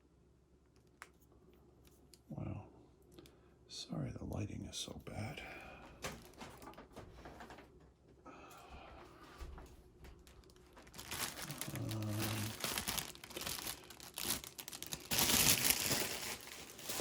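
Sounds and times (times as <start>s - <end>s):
plastic bags crinkling: 6.0s - 7.5s, 10.1s - 17.0s.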